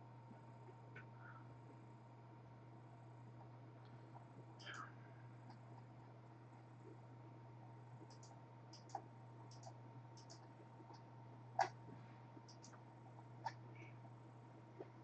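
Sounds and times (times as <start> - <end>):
faint low hum: 0.0 - 15.0
computer mouse clicking: 4.6 - 5.9, 8.0 - 11.8, 12.4 - 12.8.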